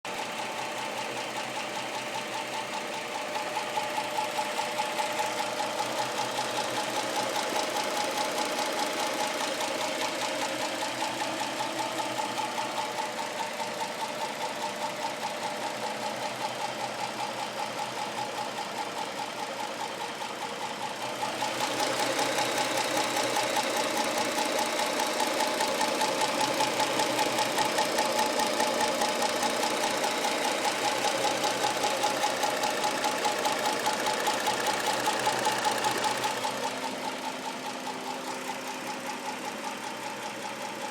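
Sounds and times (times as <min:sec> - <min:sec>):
car engine running: 0:00.1 - 0:40.9
fast even engine ticking: 0:00.2 - 0:40.9.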